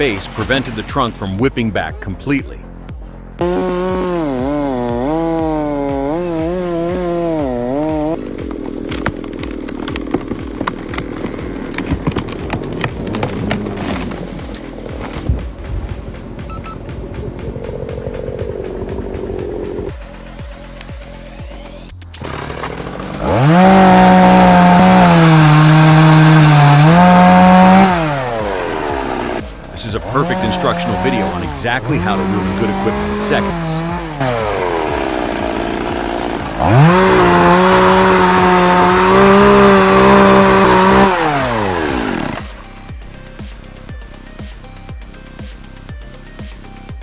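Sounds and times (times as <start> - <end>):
chainsaw revving: 3.4 - 15.2, 17.0 - 20.0, 22.2 - 43.5.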